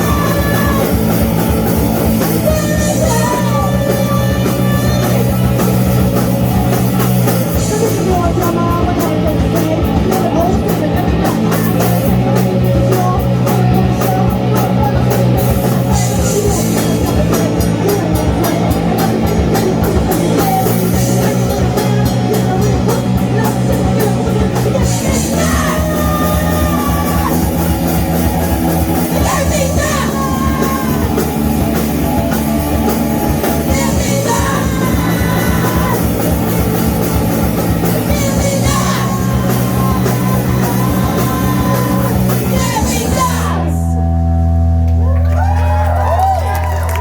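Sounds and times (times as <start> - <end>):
person singing: 0.0 - 44.0
live rock band playing: 0.0 - 47.0.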